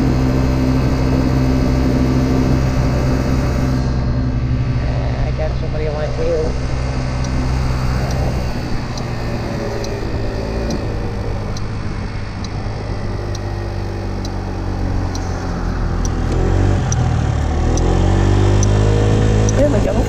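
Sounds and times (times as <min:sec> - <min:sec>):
scooter engine at full throttle: 0:00.0 - 0:20.0
wind and road noise: 0:00.0 - 0:20.0
faint regular tick: 0:14.2 - 0:15.4.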